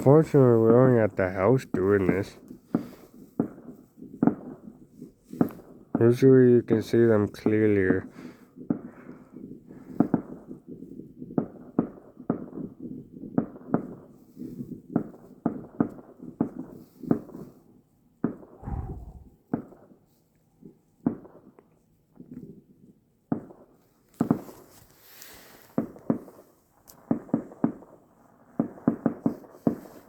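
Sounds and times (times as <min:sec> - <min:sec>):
distant fireworks exploding: 0:02.0 - 0:06.0, 0:08.0 - 0:17.5.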